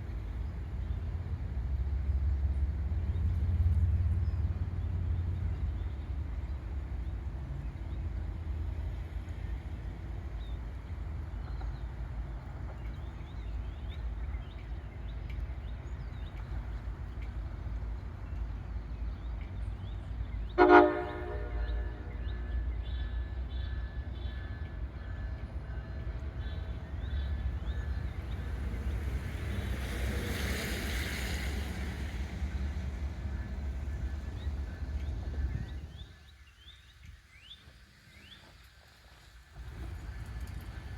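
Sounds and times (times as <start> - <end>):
diesel locomotive rumbling: 0.0 - 36.7, 38.2 - 40.9
train horn blast: 20.6 - 22.8.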